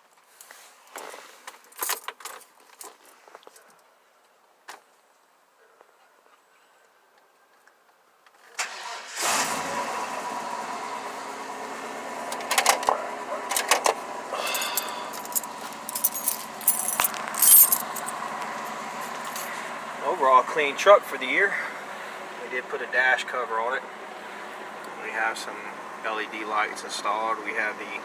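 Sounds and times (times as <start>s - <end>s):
engine cranking and idling: 8.6s - 28.0s
sharp clicks and rattles: 14.7s - 19.5s.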